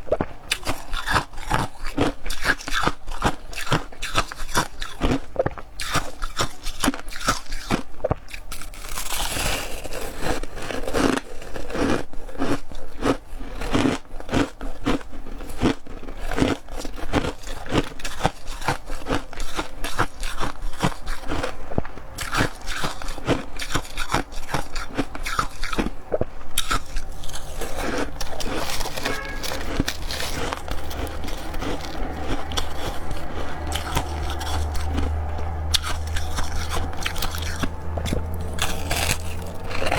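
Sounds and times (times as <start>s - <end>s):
person crunching ice: 0.0s - 39.9s
low hum: 26.9s - 39.9s.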